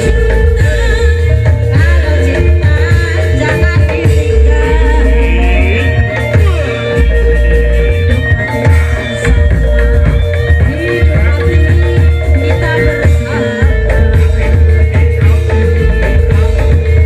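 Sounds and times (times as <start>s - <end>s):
heavy drums pulsing: 0.0s - 17.0s
person singing wavering: 0.0s - 17.0s.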